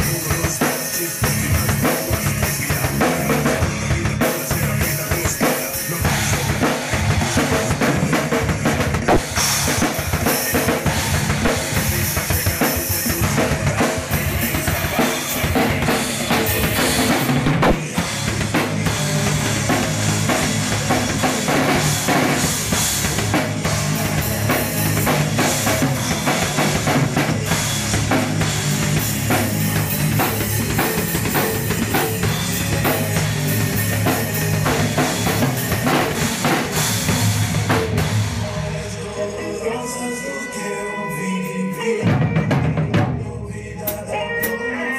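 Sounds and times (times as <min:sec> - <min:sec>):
bass drum and snare strokes: 0:00.0 - 0:38.6.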